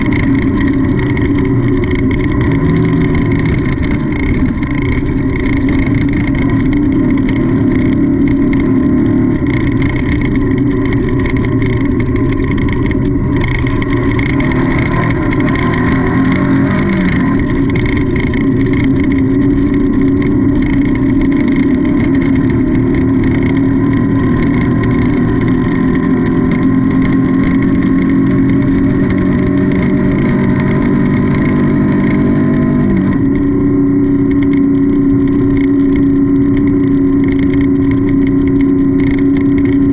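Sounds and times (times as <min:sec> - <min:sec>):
race car engine running hard: 0:00.0 - 0:39.9.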